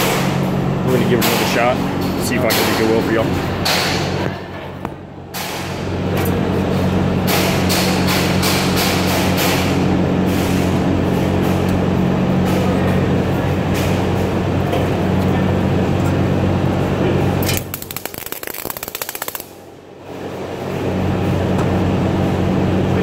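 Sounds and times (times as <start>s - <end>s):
welding arc crackling: 17.4s - 19.6s.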